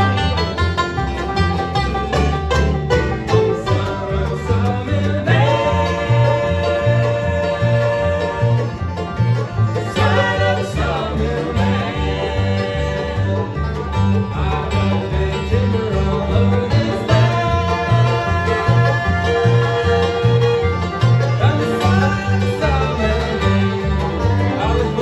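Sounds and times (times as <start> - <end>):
banjo: 0.0 - 25.0
bass line: 0.0 - 25.0
bluegrass band playing: 0.0 - 25.0.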